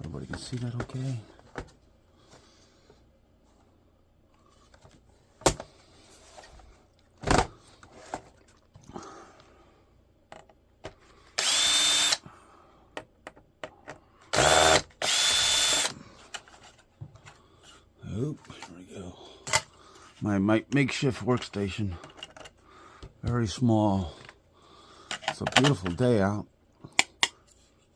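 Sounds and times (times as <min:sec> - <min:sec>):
power drill whine: 0:11.4 - 0:12.2, 0:14.3 - 0:15.9
handling clicks and knocks: 0:25.1 - 0:26.0.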